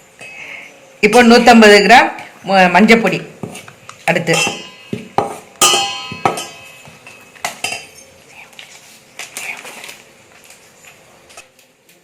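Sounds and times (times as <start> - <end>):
metal spoon clinking on metal: 4.3 - 8.1.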